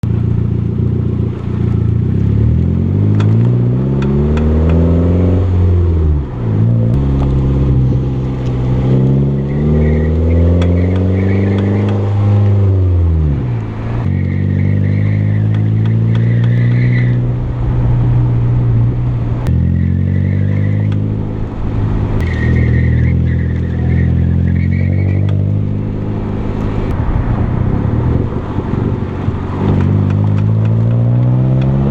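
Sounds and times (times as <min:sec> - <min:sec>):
car engine revving: 0:00.0 - 0:31.9
high-pitched squeal: 0:07.0 - 0:12.4, 0:14.1 - 0:18.6, 0:22.2 - 0:27.6.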